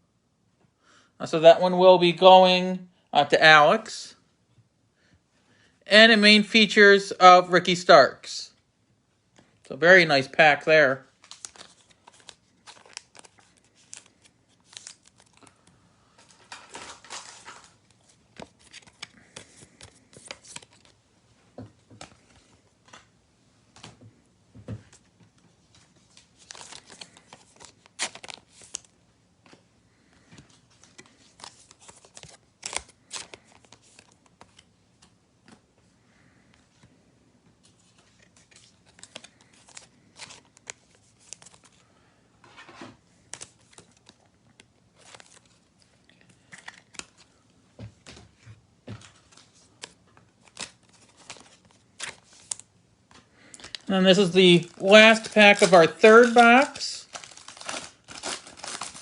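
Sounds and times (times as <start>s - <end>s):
card pack wrappers crinkling: 11.1s - 21.0s, 25.7s - 34.7s, 37.6s - 41.9s, 43.2s - 47.4s, 48.9s - 59.0s
cards being handled: 11.1s - 21.0s, 23.7s - 37.0s, 37.6s - 41.8s, 42.4s - 59.0s.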